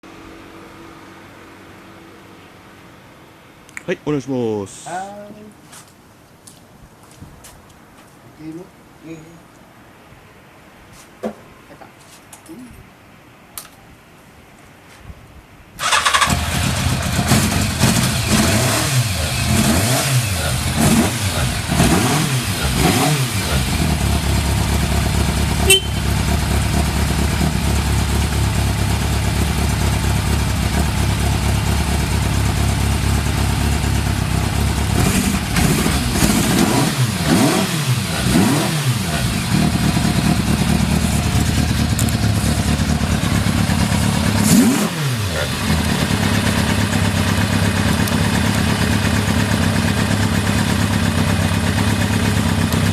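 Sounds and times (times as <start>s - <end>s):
motorcycle engine idling: 15.8s - 21.9s, 23.5s - 36.4s, 39.0s - 52.9s
engine throttle blips: 15.8s - 52.9s.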